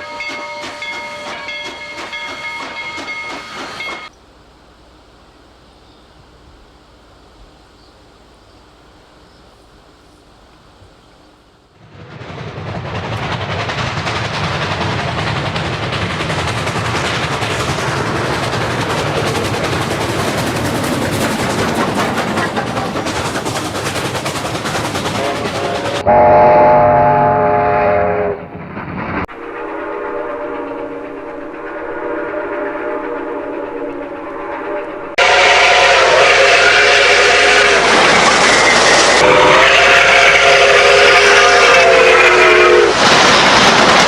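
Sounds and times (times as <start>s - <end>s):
train horn blast: 0.0s - 2.0s, 25.2s - 28.4s, 29.3s - 38.0s, 39.2s - 43.0s
train rail noise: 0.0s - 44.0s.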